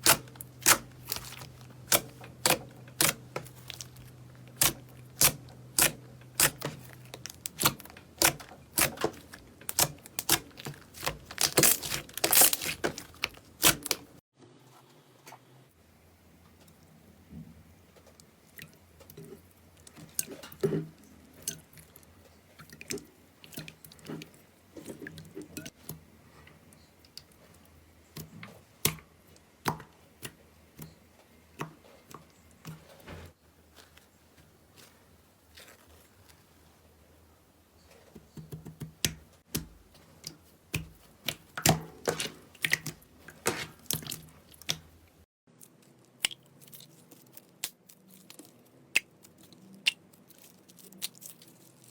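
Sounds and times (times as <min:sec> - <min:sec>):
slime popping and crackling: 0:00.0 - 0:14.1.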